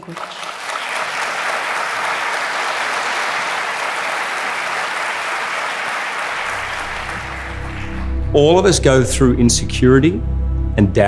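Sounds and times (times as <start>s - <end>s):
audience applauding: 0.0s - 8.4s
low music: 6.4s - 11.0s.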